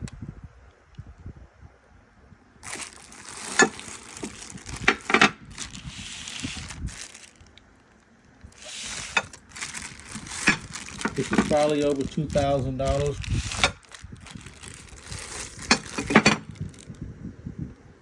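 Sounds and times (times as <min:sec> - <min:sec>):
packaging crinkling: 0:02.6 - 0:17.0.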